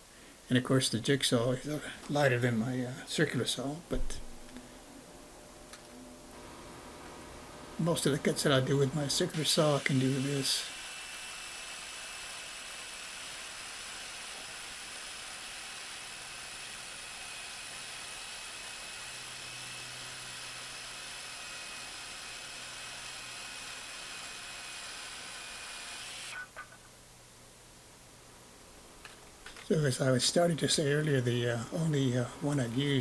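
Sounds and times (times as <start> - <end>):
faint hiss: 0.0 - 10.8
thin high whine: 1.3 - 11.8.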